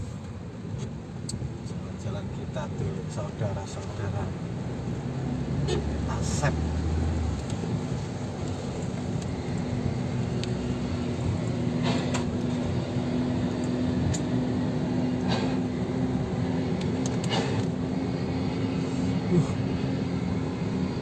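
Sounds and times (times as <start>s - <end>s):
vehicle engine and road noise: 0.0s - 21.0s
short hisses: 15.2s - 15.7s.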